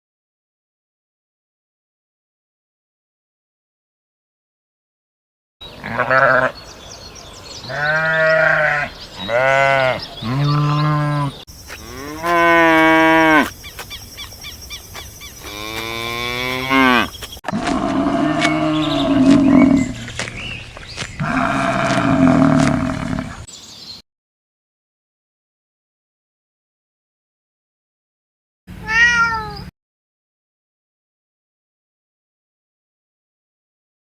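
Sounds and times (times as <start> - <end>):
rough animal call: 5.7 - 6.6, 7.6 - 13.5, 15.4 - 20.3, 21.2 - 23.5
cattle mooing: 5.8 - 6.5, 7.7 - 13.5, 15.5 - 20.1, 21.2 - 23.5.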